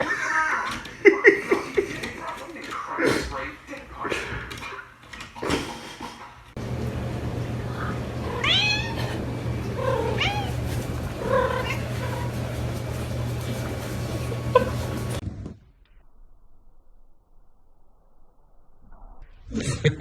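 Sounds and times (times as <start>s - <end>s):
steady low hum: 6.6s - 15.2s
cat meowing: 8.2s - 12.9s.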